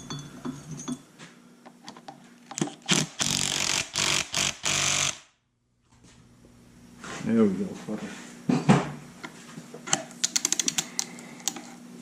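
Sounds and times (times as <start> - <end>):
power tool short bursts: 2.9 - 5.2.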